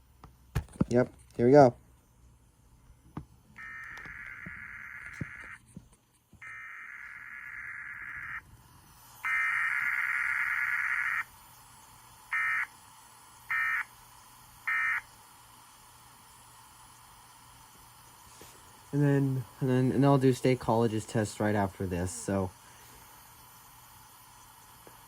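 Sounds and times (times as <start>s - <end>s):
buzzing digital data bursts: 3.6s - 5.6s, 6.4s - 8.5s, 9.2s - 11.6s.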